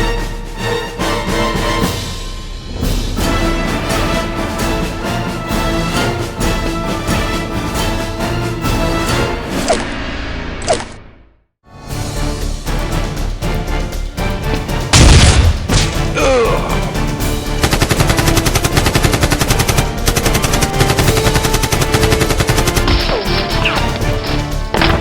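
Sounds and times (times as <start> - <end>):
action soundtrack music: 0.0 - 25.0
loud hit: 14.9 - 16.2
rapid machine-gun fire: 17.6 - 23.7.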